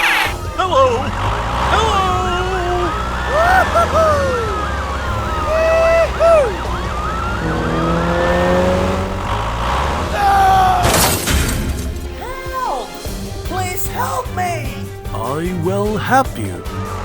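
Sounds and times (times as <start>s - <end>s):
sirens wailing: 0.0s - 13.0s.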